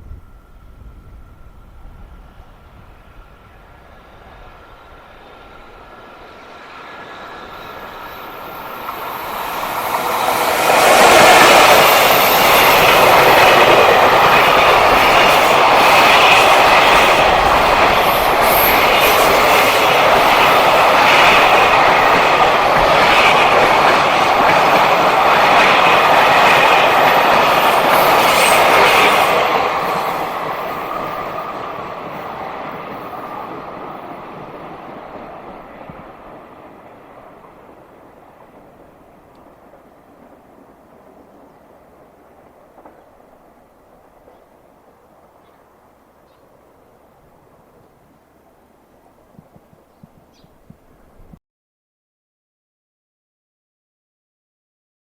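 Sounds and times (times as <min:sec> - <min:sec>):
freight train passing: 0:00.0 - 0:51.4
train wheels clicking over rail joints: 0:07.0 - 0:46.6.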